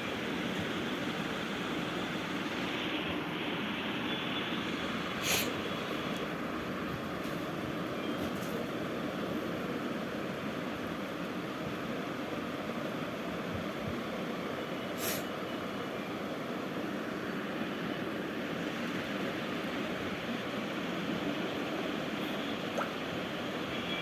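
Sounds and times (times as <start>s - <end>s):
brief hiss: 5.2s - 5.6s, 15.0s - 15.3s.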